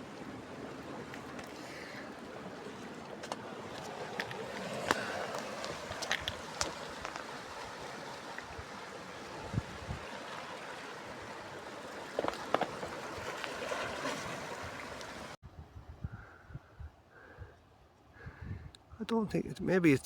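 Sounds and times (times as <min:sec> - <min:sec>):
sea water washing among rocks: 0:00.0 - 0:15.4.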